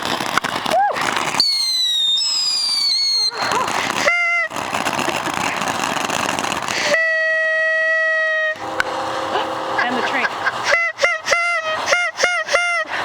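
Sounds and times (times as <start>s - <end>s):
steady hiss: 0.0s - 12.4s
firework whistle gliding down: 0.6s - 9.6s, 10.6s - 13.0s
train horn: 6.9s - 8.8s, 10.7s - 12.9s.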